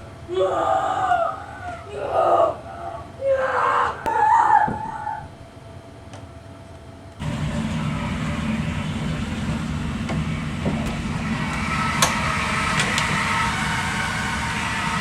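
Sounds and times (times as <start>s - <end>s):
road vehicle rumbling: 7.2s - 15.0s.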